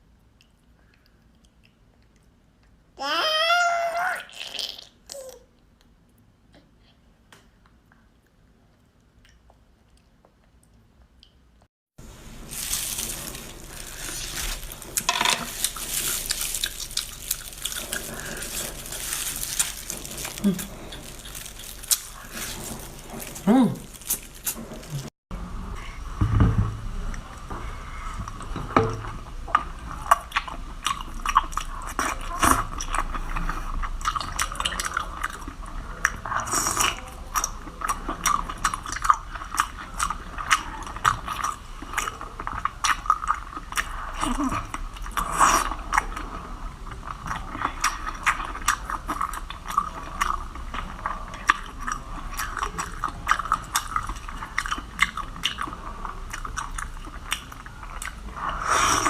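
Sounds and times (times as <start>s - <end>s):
chewing and biting seafood: 12.6s - 25.1s, 47.0s - 59.0s.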